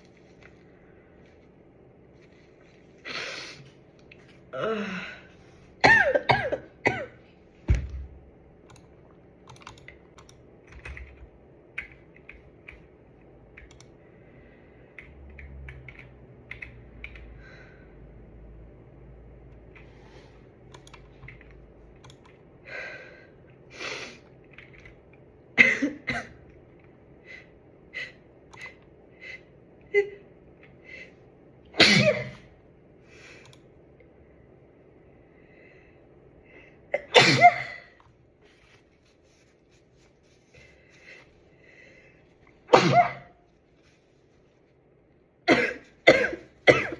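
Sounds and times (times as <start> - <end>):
person sneezing loudly: 31.8 - 32.4, 42.7 - 43.4.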